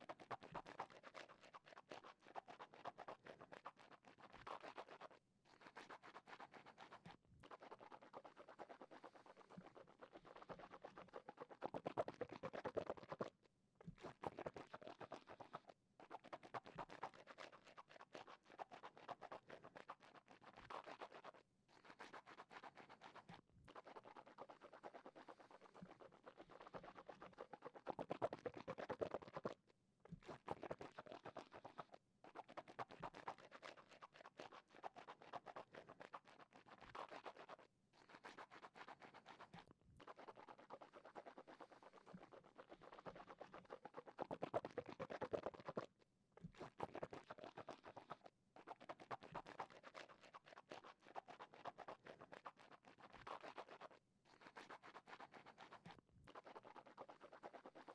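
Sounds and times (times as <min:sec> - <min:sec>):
wet mouth clicks and squelches: 0:00.0 - 0:57.9.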